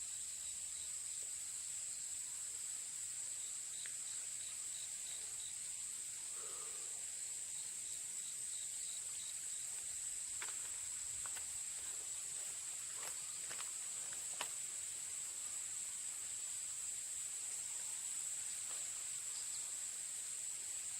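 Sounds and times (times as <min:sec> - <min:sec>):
high-pitched insect chorus: 0:00.0 - 0:20.9
faint ticks: 0:03.7 - 0:04.1.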